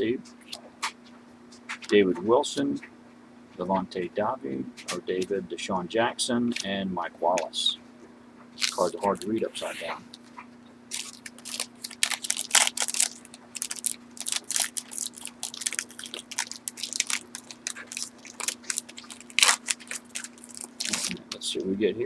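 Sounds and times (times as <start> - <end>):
foil wrapper crinkling: 8.6 - 9.4, 10.0 - 21.4.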